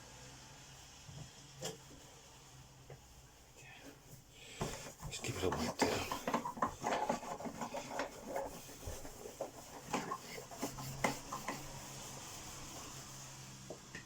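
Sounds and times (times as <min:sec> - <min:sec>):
scrapes and light knocks: 0:02.9 - 0:14.0
cloth rubbing on plastic: 0:03.1 - 0:13.6.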